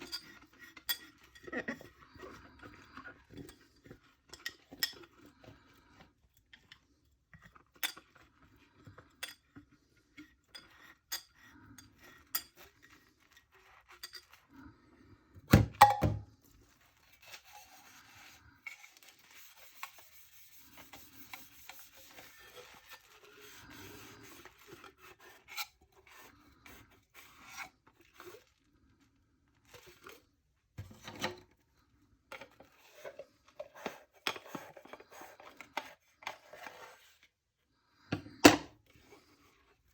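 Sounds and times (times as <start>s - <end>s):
dishes and cutlery clinking: 15.8s - 16.2s
dishes clattering: 15.8s - 16.2s.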